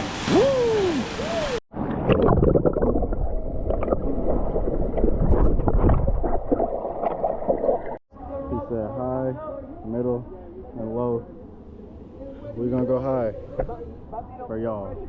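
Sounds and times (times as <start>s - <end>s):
rushing water: 0.0s - 8.0s
muffled water gurgling and sloshing: 1.7s - 8.0s.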